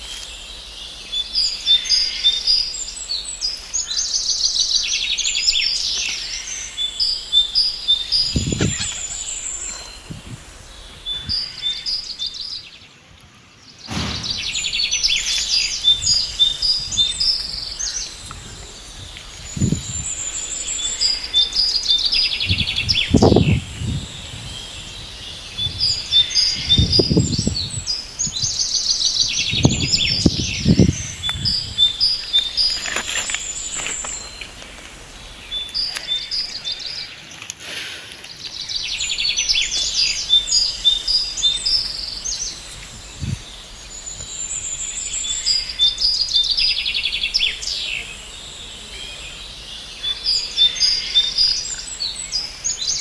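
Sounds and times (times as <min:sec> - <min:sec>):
songbirds chirping and trilling: 0:00.0 - 0:53.0
low rumbles: 0:13.8 - 0:28.3.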